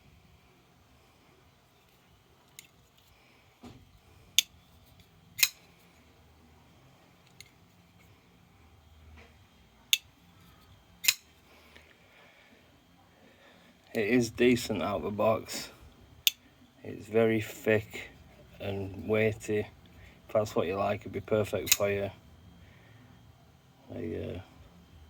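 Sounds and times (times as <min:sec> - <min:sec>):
metallic knife clicks: 0:05.4 - 0:05.7, 0:11.0 - 0:11.3.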